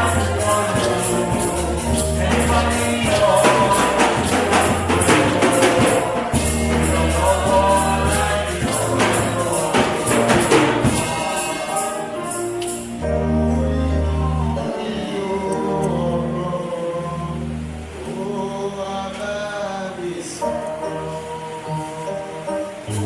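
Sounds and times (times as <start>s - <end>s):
tambourine beat: 0.0s - 13.1s
bass line: 0.0s - 18.0s
voices singing: 0.0s - 23.0s.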